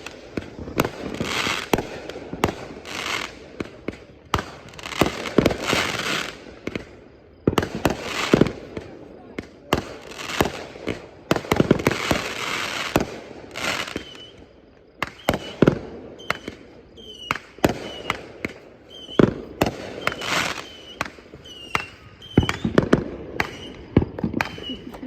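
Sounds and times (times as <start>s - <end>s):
fireworks bangs and pops: 0.0s - 25.0s
firework hissing whoosh: 17.4s - 25.0s.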